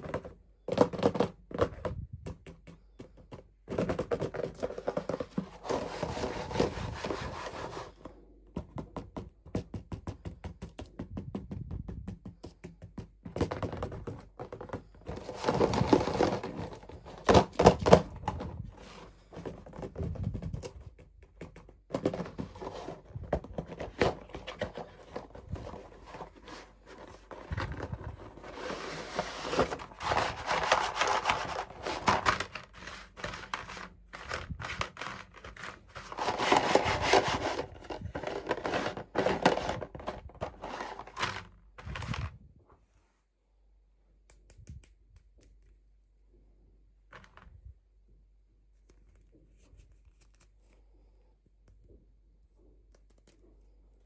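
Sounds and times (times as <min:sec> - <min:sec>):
packaging rustling and crinkling: 0:03.7 - 0:08.0, 0:13.5 - 0:21.0, 0:21.9 - 0:42.4.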